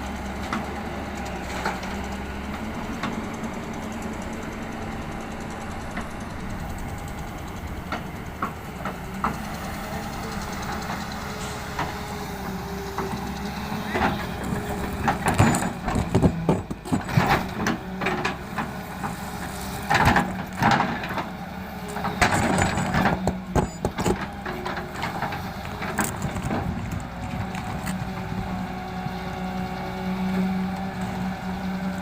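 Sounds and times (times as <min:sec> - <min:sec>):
excavator diesel engine running: 0:00.0 - 0:32.0
gravel clattering and crunching: 0:13.0 - 0:31.6.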